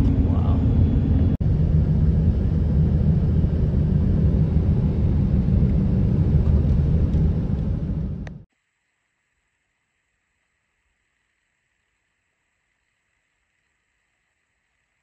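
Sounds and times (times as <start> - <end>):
car engine and road noise: 0.0 - 8.5.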